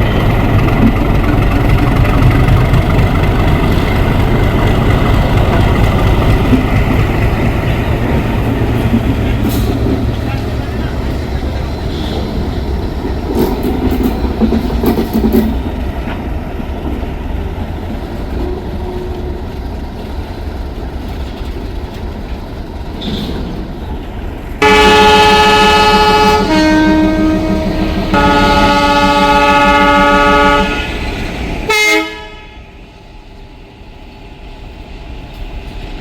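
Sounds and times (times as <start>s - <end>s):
train rumbling: 0.0s - 36.0s
locomotive multi-tone horn: 18.4s - 19.6s, 24.6s - 31.0s, 31.7s - 32.8s.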